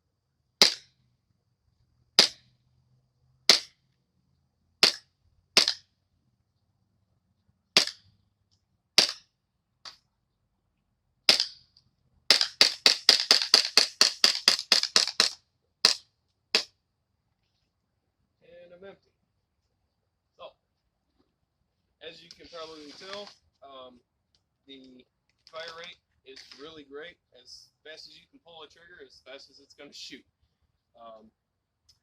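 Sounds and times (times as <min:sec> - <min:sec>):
airsoft pistol shots: 0:00.6 - 0:00.9, 0:02.2 - 0:02.4, 0:03.5 - 0:03.8, 0:04.8 - 0:05.0, 0:05.6 - 0:05.9, 0:07.8 - 0:08.0, 0:09.0 - 0:09.2, 0:11.3 - 0:11.6.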